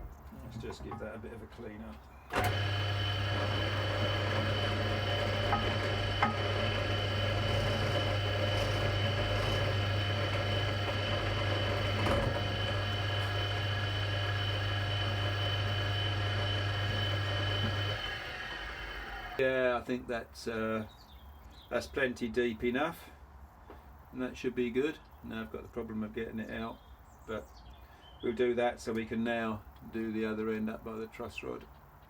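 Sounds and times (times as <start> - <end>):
drill press motor hum: 2.3 - 19.4.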